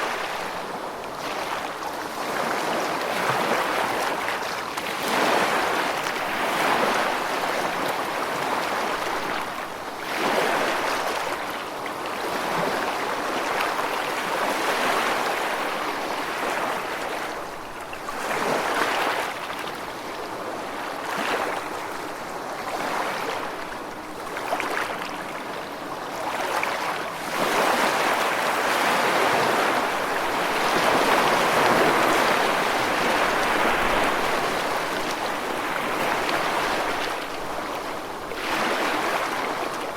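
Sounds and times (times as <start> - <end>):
sea waves washing onto sand: 18.1 - 39.9.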